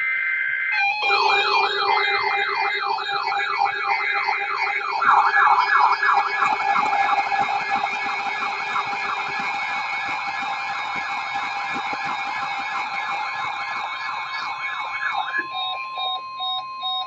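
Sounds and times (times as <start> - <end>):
electronic sirens yelping: 0.0 - 17.0
steady electronic tones: 0.6 - 17.0.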